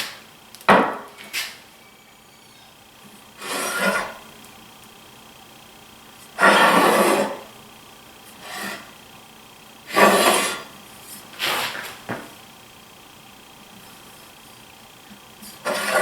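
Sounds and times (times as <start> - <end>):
straight edge scraping on wood: 3.4 - 4.2.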